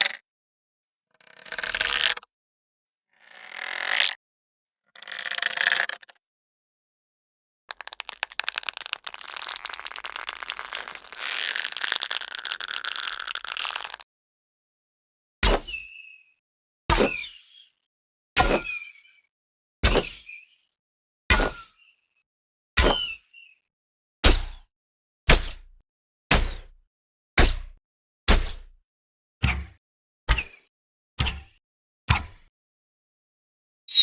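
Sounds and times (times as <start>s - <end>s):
bow string creaking under tension: 7.7s - 14.0s
arrow release snap and twang: 24.2s - 24.6s, 25.3s - 26.8s, 27.4s - 28.8s, 29.4s - 30.6s, 31.2s - 31.5s, 32.1s - 32.5s
bow firing arrow snap: 27.4s - 28.8s.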